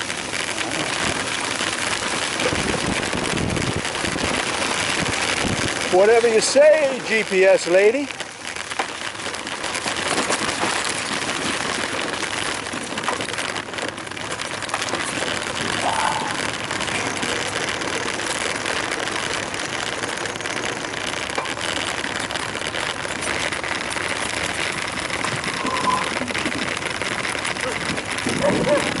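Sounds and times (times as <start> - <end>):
wind across microphone: 0.0 - 6.0, 24.5 - 29.0
bicycle tyre noise: 0.0 - 29.0.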